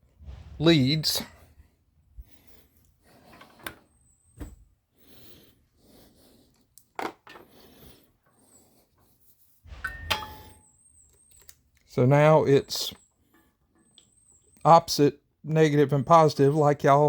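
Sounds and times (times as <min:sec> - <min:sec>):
clicks and knocks: 0:09.7 - 0:10.6.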